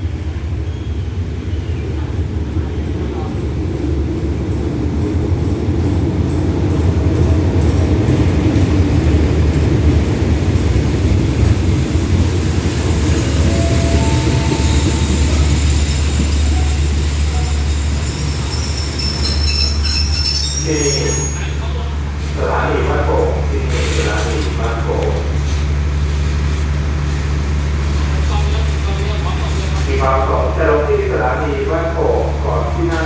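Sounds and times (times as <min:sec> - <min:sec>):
locomotive engine rumble: 0:00.1 - 0:33.0
brakes hissing and squealing: 0:12.8 - 0:22.0.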